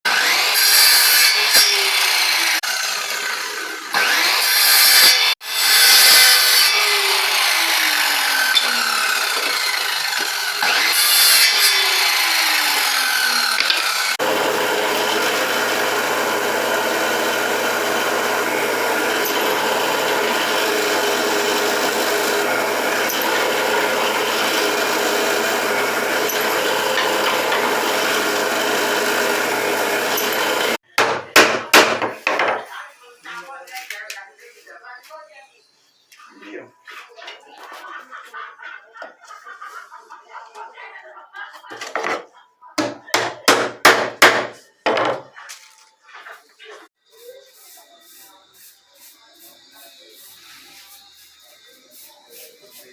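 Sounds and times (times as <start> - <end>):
power tools cutting and sanding wood: 0.1 - 30.8, 46.7 - 52.9
motor winding down: 11.9 - 30.8.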